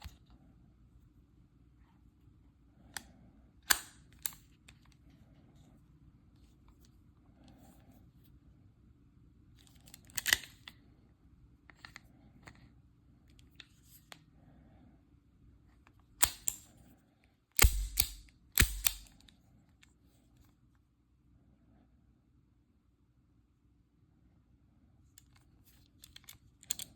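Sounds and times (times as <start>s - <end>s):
handgun mechanical clicks: 3.7s - 4.4s, 16.2s - 16.7s, 17.6s - 19.3s, 26.0s - 26.9s.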